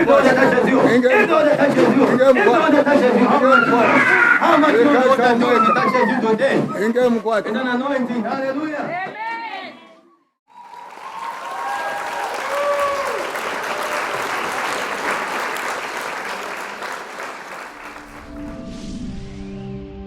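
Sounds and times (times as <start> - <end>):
congregation applauding: 10.5 - 18.6.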